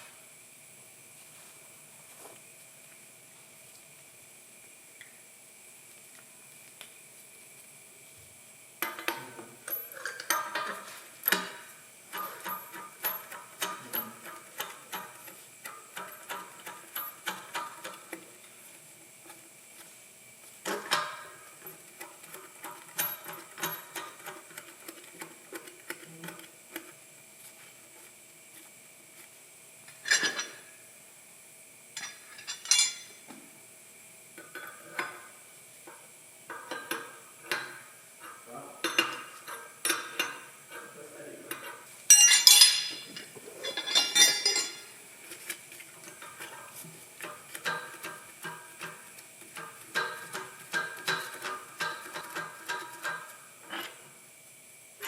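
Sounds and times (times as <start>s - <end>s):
metal tools clinking: 30.0s - 30.6s, 32.0s - 33.2s, 41.5s - 45.0s.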